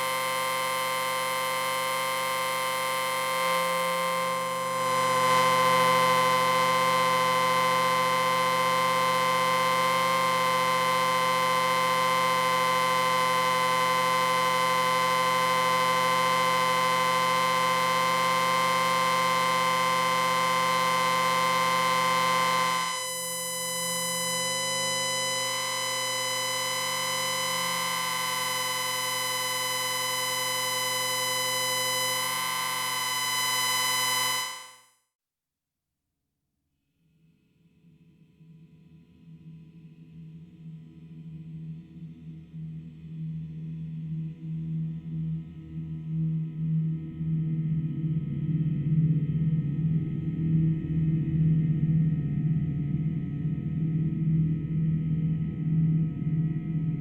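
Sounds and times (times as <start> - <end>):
electronic ringing drone: 0.0 - 34.8.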